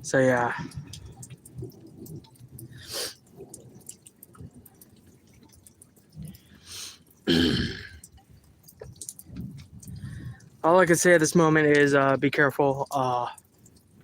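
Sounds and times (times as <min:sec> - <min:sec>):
rainwater dripping: 0:00.0 - 0:14.0
short hiss: 0:02.8 - 0:03.2, 0:06.6 - 0:07.0.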